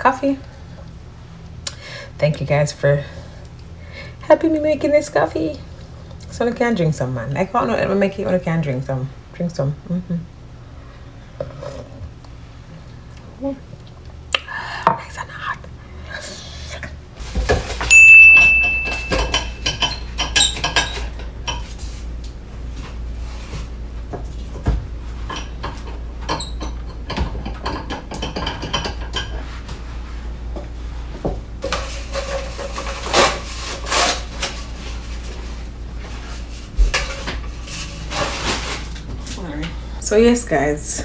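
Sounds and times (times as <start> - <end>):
crockery and cutlery clinking: 17.8 - 21.8, 25.2 - 29.6
loud steady high tone: 17.9 - 19.5.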